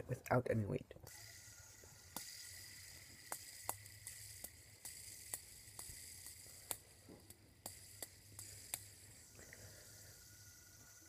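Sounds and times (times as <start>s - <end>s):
fidget spinner whirring: 1.0s - 11.0s.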